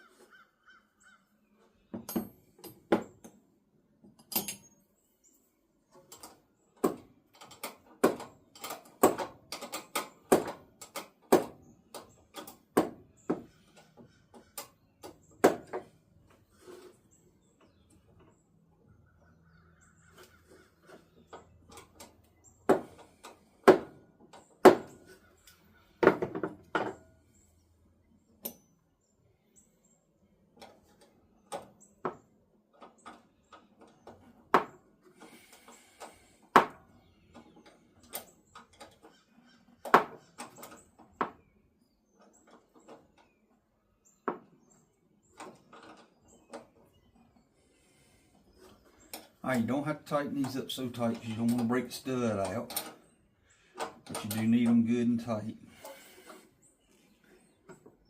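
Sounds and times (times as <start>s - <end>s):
metal parts clicking and knocking: 4.0s - 4.8s, 5.9s - 15.9s, 50.8s - 53.0s.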